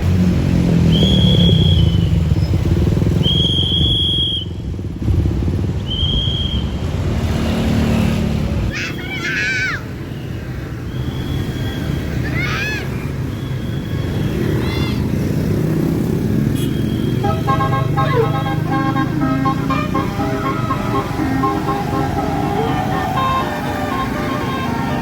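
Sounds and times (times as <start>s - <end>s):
diesel bus engine running: 17.2s - 25.0s
short high-pitched tones: 17.2s - 25.0s
warbling high tones: 17.2s - 25.0s.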